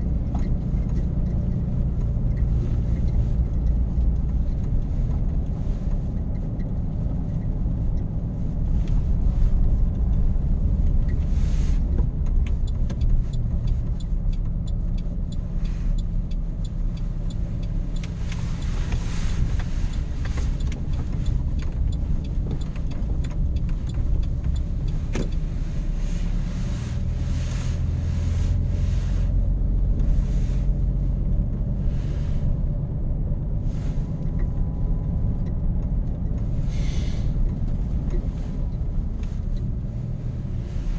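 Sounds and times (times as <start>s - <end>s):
truck engine and road rumble: 0.0s - 40.9s
crackling clicks: 10.1s - 26.3s.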